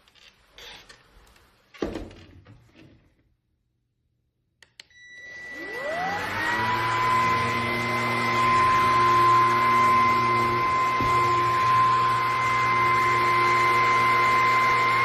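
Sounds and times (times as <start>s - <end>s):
switch clicks: 4.6s - 4.9s
vacuum motor whine: 4.9s - 15.0s.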